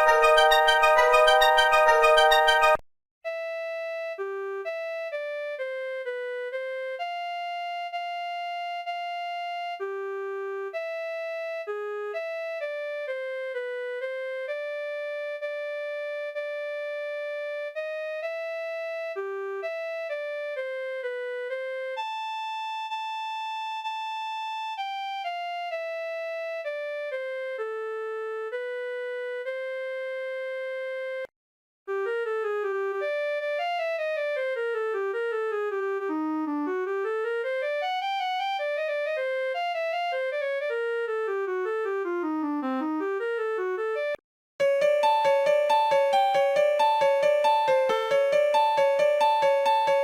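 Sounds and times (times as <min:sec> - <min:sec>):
synthesized phone ringtone: 0:00.0 - 0:02.8, 0:44.6 - 0:50.0.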